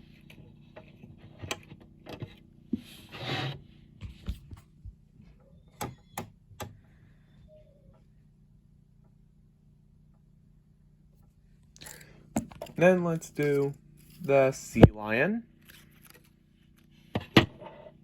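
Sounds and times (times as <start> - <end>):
rustling scrape: 2.8 - 4.2.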